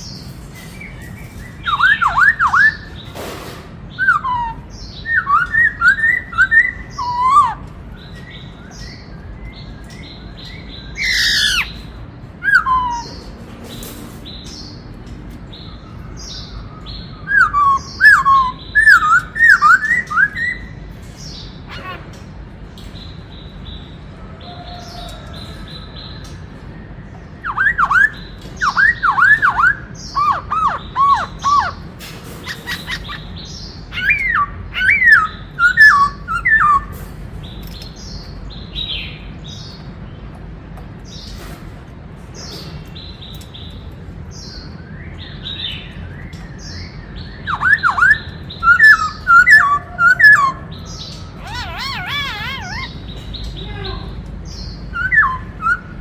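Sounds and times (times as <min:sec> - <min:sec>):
bird whistling song: 0:00.0 - 0:03.2, 0:03.9 - 0:13.4, 0:15.5 - 0:22.0, 0:27.0 - 0:37.0, 0:42.5 - 0:53.7, 0:54.5 - 0:56.0
faint bird chirps: 0:44.6 - 0:55.9.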